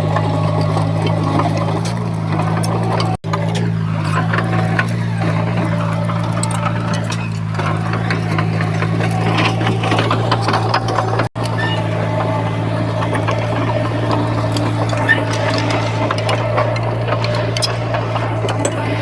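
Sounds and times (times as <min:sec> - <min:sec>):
heavy diesel engine running: 0:00.0 - 0:19.0
machinery rattling and clanking: 0:00.0 - 0:19.0.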